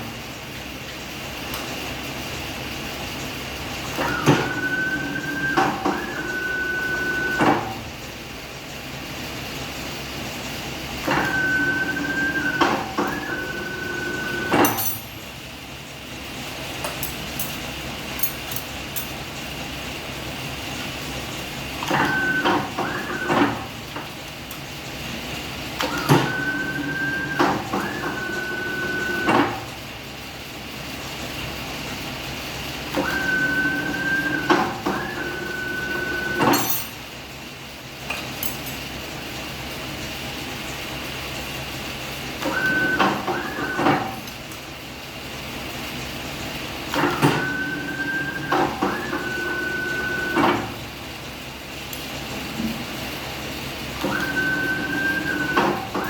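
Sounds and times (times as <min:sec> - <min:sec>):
steady machine hum: 0:00.0 - 0:21.8
machine high whine: 0:11.1 - 0:15.0, 0:25.9 - 0:29.4, 0:33.0 - 0:36.9, 0:47.1 - 0:50.7.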